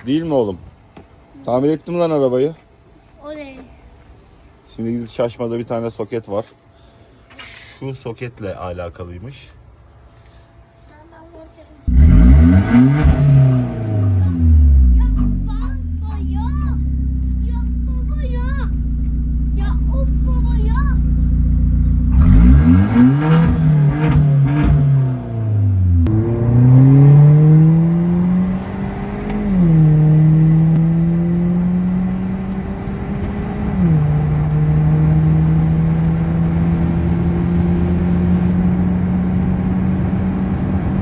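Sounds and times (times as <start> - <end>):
car engine accelerating: 11.8 - 41.0.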